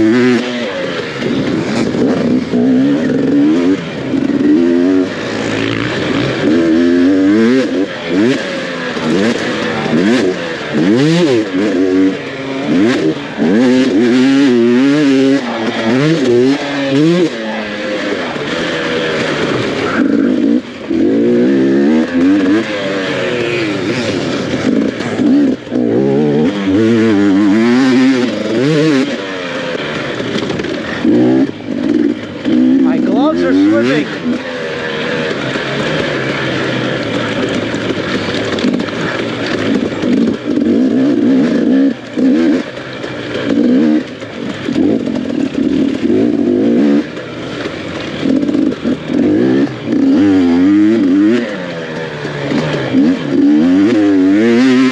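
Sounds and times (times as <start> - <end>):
dirt bike engine revving: 0.0 - 54.9.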